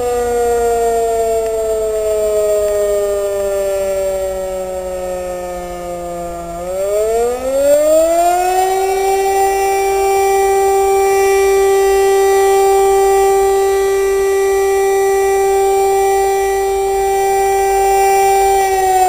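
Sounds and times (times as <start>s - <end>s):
motor siren wailing: 0.0s - 19.0s.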